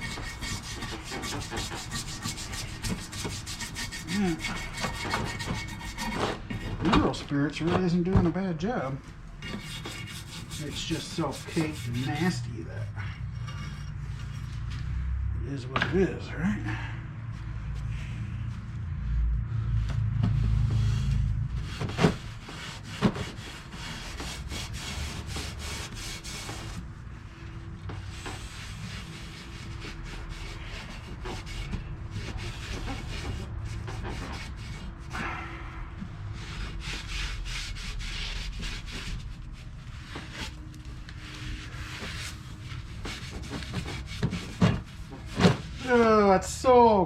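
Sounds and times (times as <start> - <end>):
brush scrubbing metal part: 0.0 - 6.7, 9.4 - 14.4.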